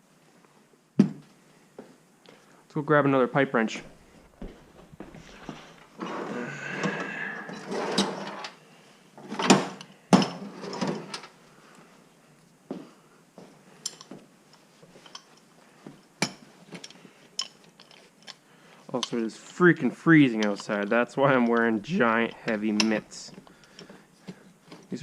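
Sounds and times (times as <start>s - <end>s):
tools scraping and sliding: 4.0s - 8.6s, 9.2s - 11.3s.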